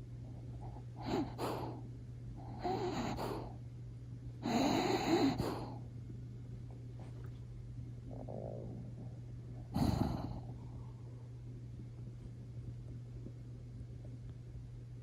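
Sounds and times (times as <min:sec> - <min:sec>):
dog snoring: 0:00.6 - 0:01.8, 0:02.4 - 0:03.6, 0:04.4 - 0:05.8, 0:08.1 - 0:10.8.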